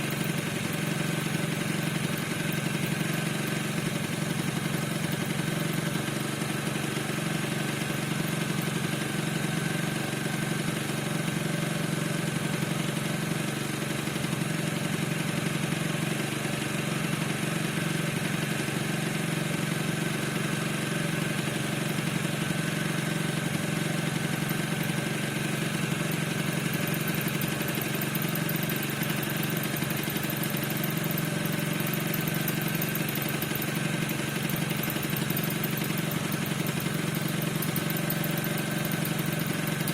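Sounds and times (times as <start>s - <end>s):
scooter engine idling: 0.0s - 39.9s.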